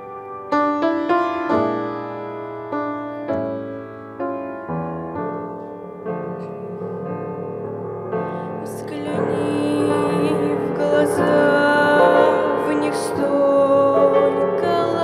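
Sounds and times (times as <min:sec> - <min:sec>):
piano playing slow hymn: 0:00.0 - 0:15.0.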